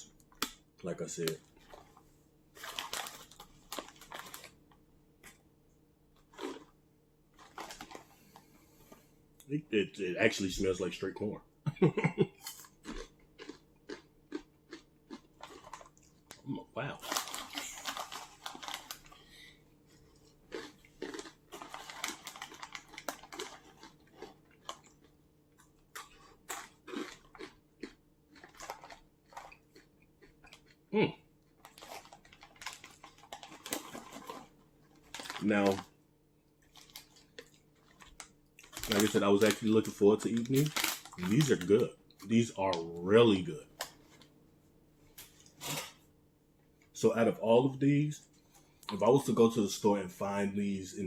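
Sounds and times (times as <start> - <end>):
plastic snack bag rustling: 1.1 - 4.7, 7.3 - 8.5, 15.3 - 27.6, 28.3 - 30.8, 31.5 - 44.3
person chewing crunchy chips: 1.3 - 4.6, 6.1 - 8.3, 12.3 - 44.3.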